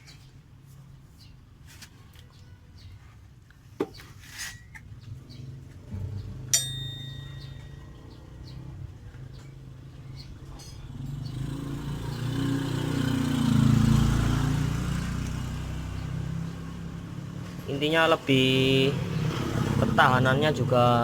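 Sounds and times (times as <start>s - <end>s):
vehicle engine passing: 4.9s - 6.6s, 7.2s - 21.0s
sharp metallic clink: 6.5s - 7.9s.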